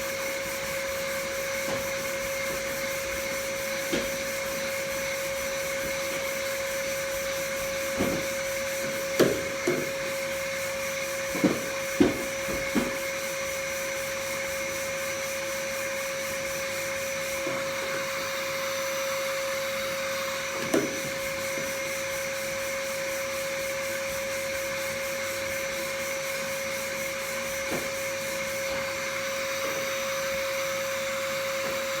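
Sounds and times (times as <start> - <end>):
sander knocking on panel: 1.6 - 4.8, 5.4 - 13.4, 20.6 - 21.8.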